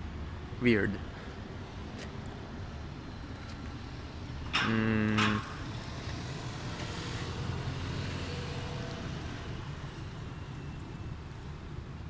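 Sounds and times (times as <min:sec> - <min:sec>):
low rumble of road traffic: 0:00.0 - 0:12.0
vehicle passing: 0:04.7 - 0:10.2.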